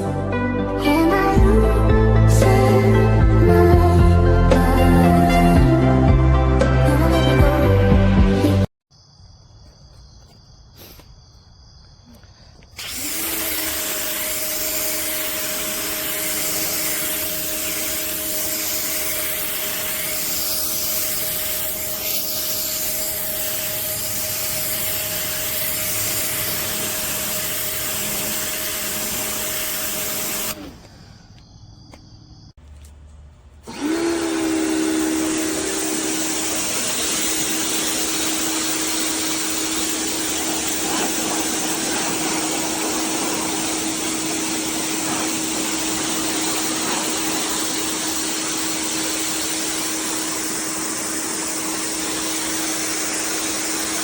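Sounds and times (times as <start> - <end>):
pressure washer motor humming: 12.6 - 31.3, 32.8 - 54.0
spray hissing: 12.7 - 31.2, 33.8 - 54.0.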